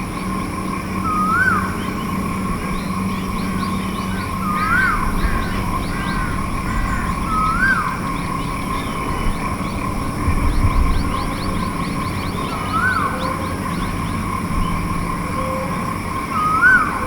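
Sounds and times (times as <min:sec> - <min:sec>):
bird whistled call: 0:01.0 - 0:01.8, 0:03.4 - 0:08.9, 0:10.8 - 0:13.6, 0:16.3 - 0:17.0.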